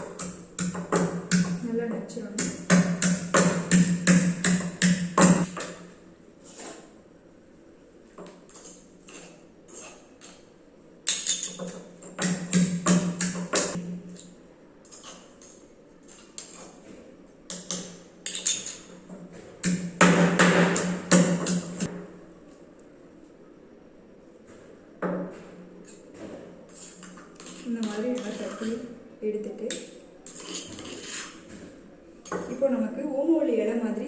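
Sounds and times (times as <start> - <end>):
pestle pounding in mortar: 0.0 - 1.7, 2.4 - 5.8, 11.6 - 14.0, 19.6 - 21.9.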